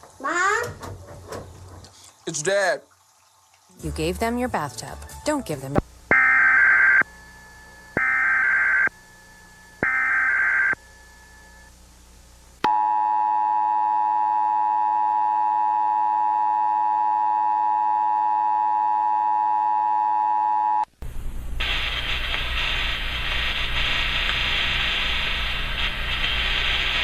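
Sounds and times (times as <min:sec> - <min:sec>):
noisy sound: 0:21.0 - 0:27.0.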